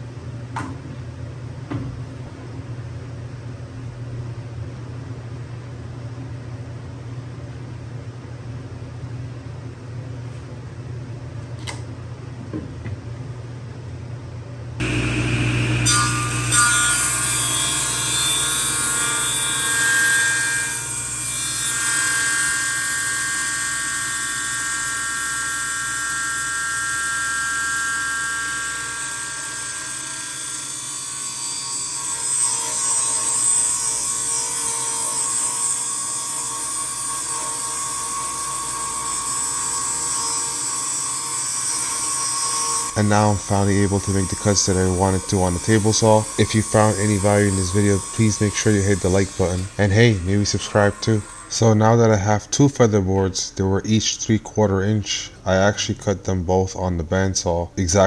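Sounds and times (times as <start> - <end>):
table saw cutting wood: 14.8 - 55.6.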